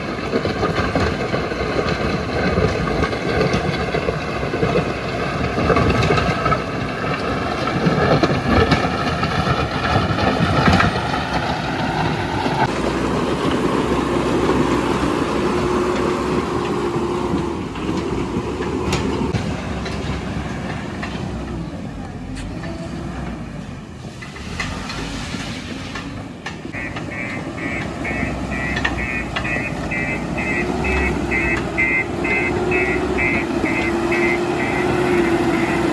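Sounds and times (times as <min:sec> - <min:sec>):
diesel engine working: 0:00.0 - 0:35.9
rapid electronic beeping: 0:26.8 - 0:35.9.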